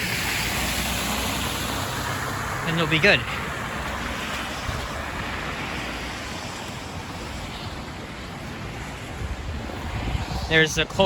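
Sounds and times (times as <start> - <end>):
road traffic whooshing: 0.0 - 11.0
tyres on wet slushy pavement: 0.0 - 11.0
wind rumble on microphone: 3.5 - 11.0.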